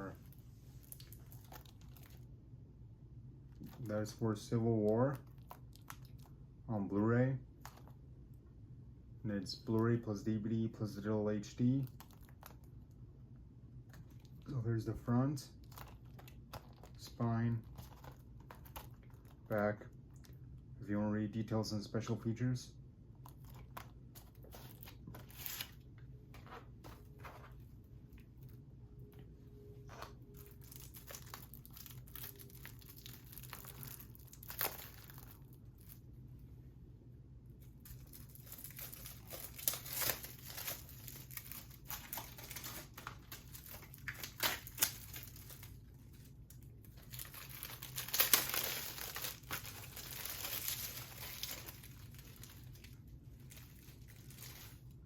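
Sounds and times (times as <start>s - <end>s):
plastic wrap crinkling: 0.0s - 2.4s, 4.8s - 6.4s, 11.4s - 13.0s, 13.8s - 20.5s, 23.1s - 36.1s, 37.6s - 55.0s.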